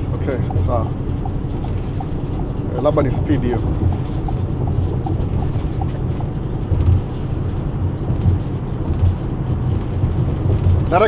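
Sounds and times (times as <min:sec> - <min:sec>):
truck road and engine rumble: 0:00.0 - 0:11.0.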